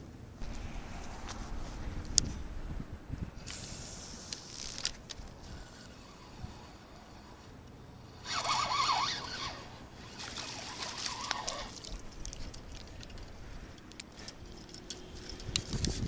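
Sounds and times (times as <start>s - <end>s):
water splashing: 4.0s - 13.3s
light clicks and rustles: 8.4s - 16.0s.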